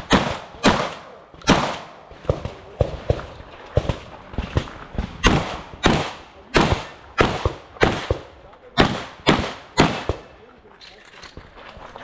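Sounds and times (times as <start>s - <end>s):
shotgun shots: 0.0s - 10.4s.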